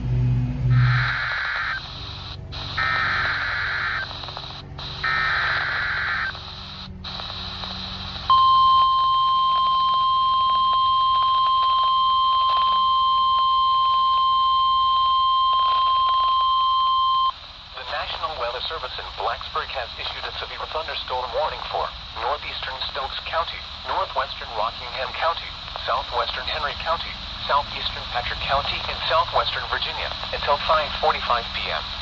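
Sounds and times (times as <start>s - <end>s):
steady warning alarm tone: 0.0s - 17.4s
buzzy warbling digital bursts: 0.5s - 2.0s
faint radio hiss: 0.7s - 32.0s.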